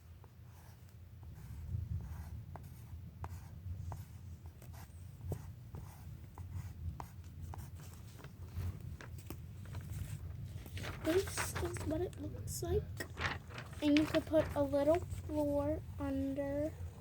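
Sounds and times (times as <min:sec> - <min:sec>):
pencil scratching on paper: 0:00.4 - 0:08.0
pencil tapping drawing surface: 0:00.5 - 0:07.7.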